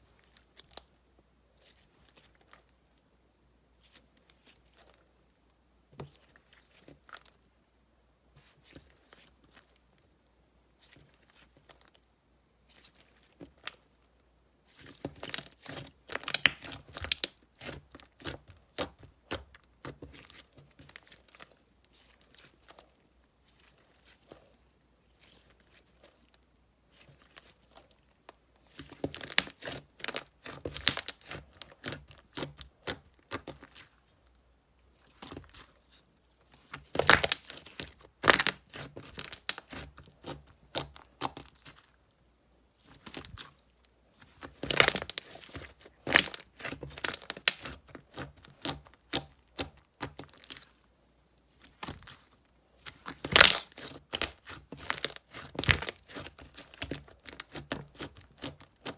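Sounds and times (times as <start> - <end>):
slime crackling and popping: 15.2 - 21.4, 28.8 - 33.8, 36.8 - 41.7, 44.3 - 50.6, 52.8 - 58.9.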